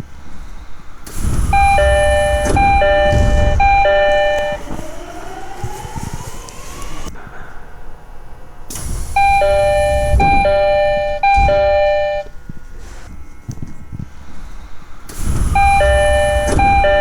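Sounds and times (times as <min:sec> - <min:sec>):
low rumble: 0:00.2 - 0:17.0
rising whine: 0:01.0 - 0:17.0
two-note door chime: 0:01.6 - 0:04.6, 0:09.3 - 0:12.3.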